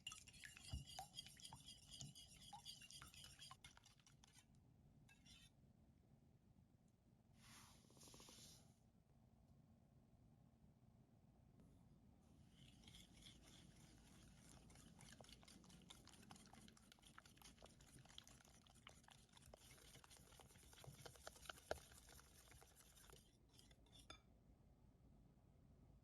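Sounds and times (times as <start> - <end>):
fast clicking and scraping: 0.3 - 4.4, 12.6 - 24.1.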